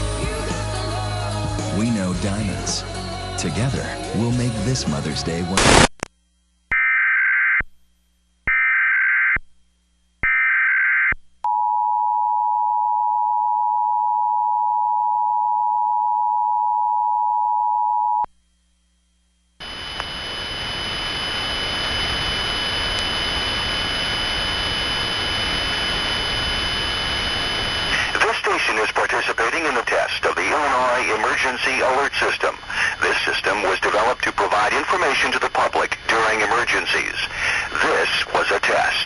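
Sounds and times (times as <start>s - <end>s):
steady loud hiss: 4.3s - 6.0s, 19.6s - 39.0s.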